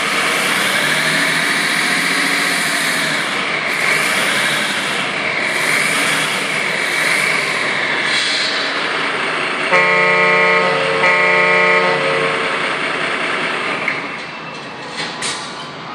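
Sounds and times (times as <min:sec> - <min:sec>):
steady vehicle noise: 0:00.0 - 0:15.9
vehicle horn toots: 0:09.7 - 0:12.4.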